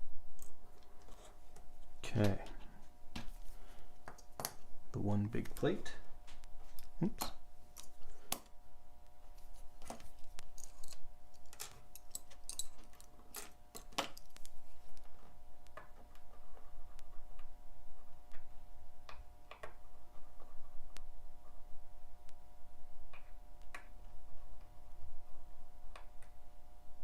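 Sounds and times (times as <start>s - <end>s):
faint steady hum: 0.0s - 27.0s
small metal tools clicking: 10.6s - 14.4s.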